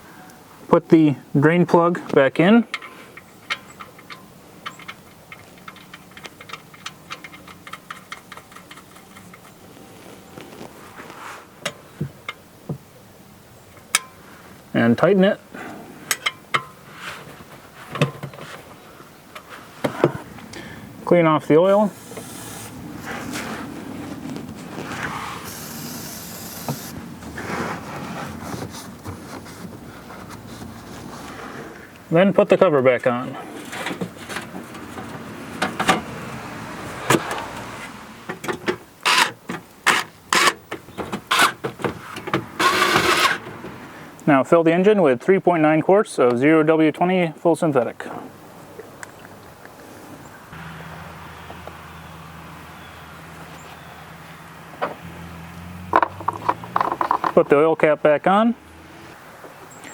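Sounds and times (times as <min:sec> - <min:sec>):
rag rubbing and rustling: 0:21.9 - 0:31.7, 0:39.0 - 0:43.6
ratchet wrench clicking: 0:25.5 - 0:26.9
tools knocking: 0:56.0 - 0:57.5.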